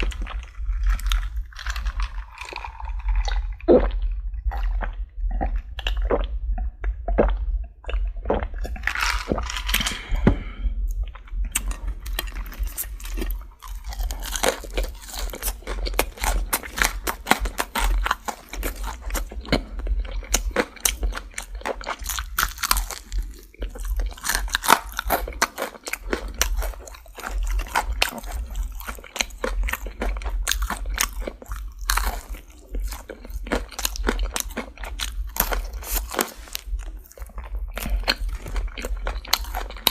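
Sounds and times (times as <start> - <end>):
low hum: 0.0 - 16.5
crunchy chewing: 0.0 - 39.9.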